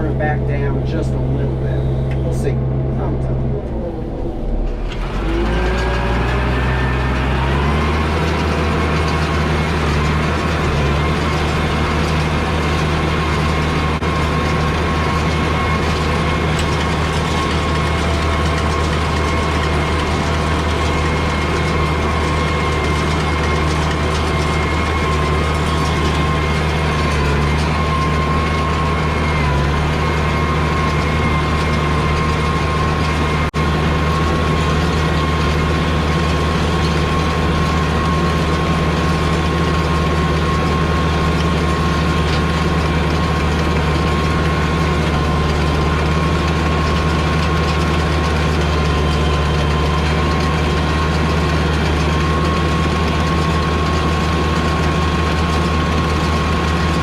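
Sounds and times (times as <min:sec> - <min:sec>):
baler high whine: 0:00.0 - 0:47.0
tractor diesel engine under load: 0:00.0 - 0:57.0.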